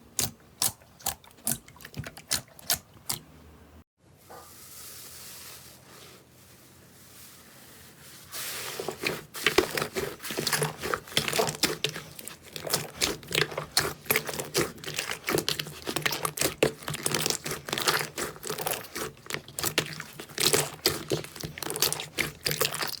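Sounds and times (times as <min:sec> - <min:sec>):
slime squished by hand crackling: 0:09.4 - 0:23.0.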